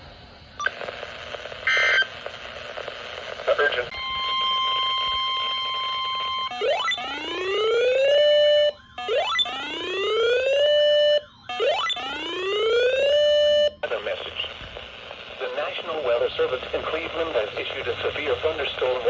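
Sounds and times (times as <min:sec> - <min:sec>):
steady warning tone: 0:03.7 - 0:13.9
rising whooping siren: 0:03.9 - 0:13.8.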